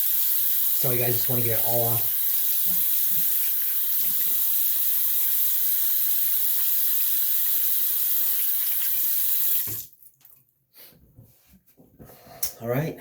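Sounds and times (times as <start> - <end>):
tap running into sink: 2.5 - 4.4, 9.6 - 9.9.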